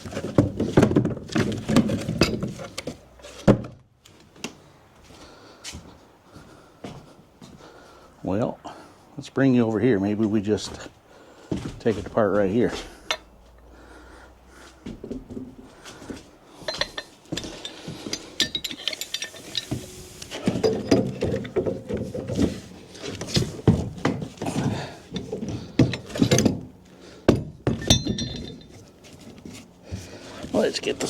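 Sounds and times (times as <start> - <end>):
knocks clinks and rattles: 0.0 - 3.0, 16.6 - 26.7, 27.3 - 29.7.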